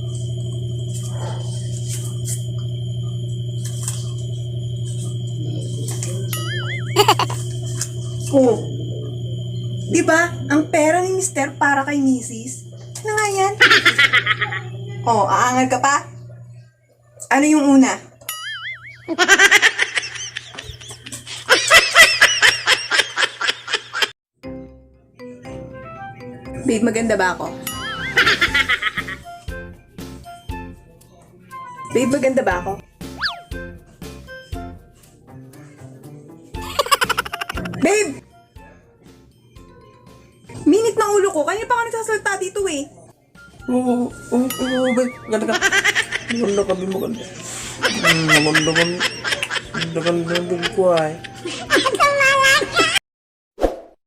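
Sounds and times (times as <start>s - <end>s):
thin high tone: 0.0s - 16.7s, 18.2s - 21.2s, 33.2s - 33.5s, 44.2s - 49.3s
low electrical hum: 0.0s - 18.3s
wavering whistle-like tone: 4.9s - 12.4s, 18.3s - 19.2s, 33.1s - 33.6s, 44.5s - 45.6s
rapid rhythmic laughter: 6.4s - 7.4s, 13.4s - 14.7s, 18.5s - 24.1s, 27.8s - 29.4s, 36.6s - 38.2s, 44.6s - 53.0s.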